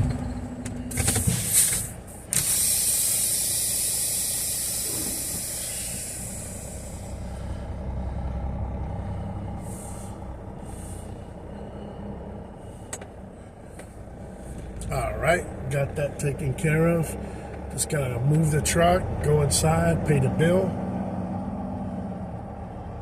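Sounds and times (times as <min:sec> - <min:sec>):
diesel engine idling: 0:00.0 - 0:23.0
air brake hiss: 0:01.0 - 0:07.3.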